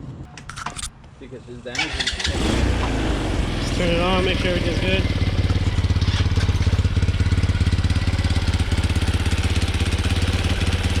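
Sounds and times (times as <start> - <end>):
motorcycle engine idling: 3.4 - 11.0.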